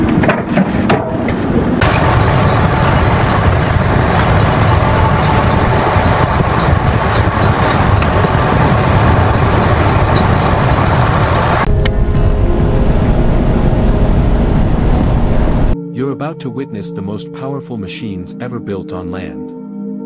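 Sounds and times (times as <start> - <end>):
heavy machinery rumbling and grinding: 0.0 - 15.8.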